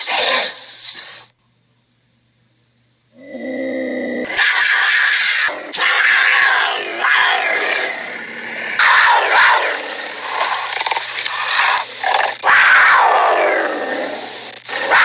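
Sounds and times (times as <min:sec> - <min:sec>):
tiger growling: 0:03.2 - 0:15.0
tiger snarling: 0:03.2 - 0:15.0.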